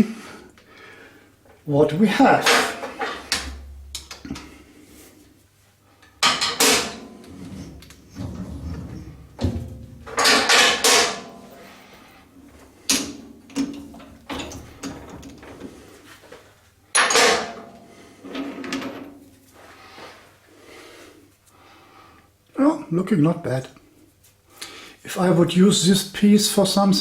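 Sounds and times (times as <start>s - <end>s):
metal parts clanking: 2.3s - 4.5s, 6.2s - 12.0s, 12.9s - 15.7s, 16.9s - 19.2s
sharp knocks and rattles: 6.2s - 11.8s, 12.8s - 15.9s, 17.0s - 19.2s.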